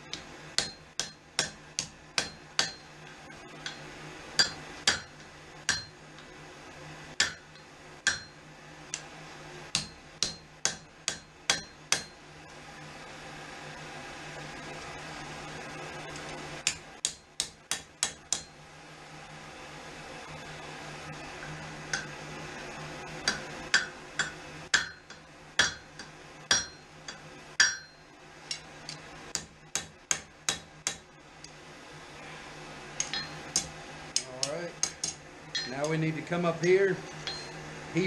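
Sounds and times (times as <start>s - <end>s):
forge blower hum: 0.0s - 38.0s
hammer ringing on steel: 4.4s - 6.0s, 7.2s - 8.4s, 9.8s - 12.2s, 23.3s - 28.0s, 33.0s - 33.4s, 35.0s - 36.0s, 37.2s - 37.6s.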